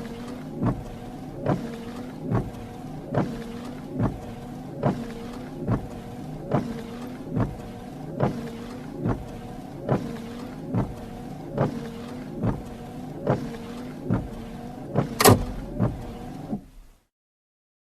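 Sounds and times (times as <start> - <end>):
wiper motor hum: 0.0 - 17.0
wiper knocking: 0.1 - 16.8
sharp click: 15.2 - 15.6.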